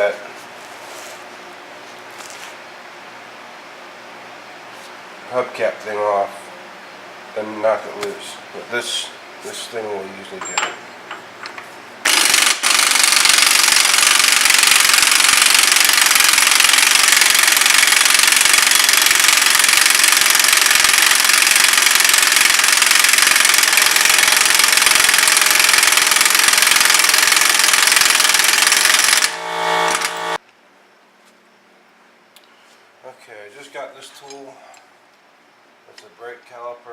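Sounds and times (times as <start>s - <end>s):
air impact wrench rattling: 10.4s - 30.4s.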